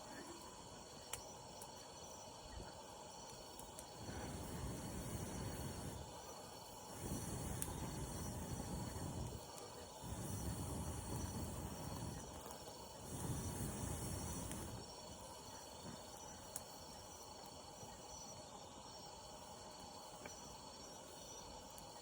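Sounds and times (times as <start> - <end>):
crickets chirping: 0.0 - 22.0
faint clicks: 1.1 - 1.7, 3.3 - 4.3, 20.2 - 20.5.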